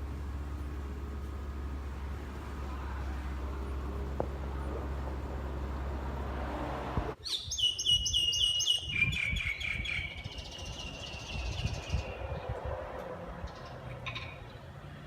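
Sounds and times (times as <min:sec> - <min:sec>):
bird whistling repeated notes: 0:07.3 - 0:11.6.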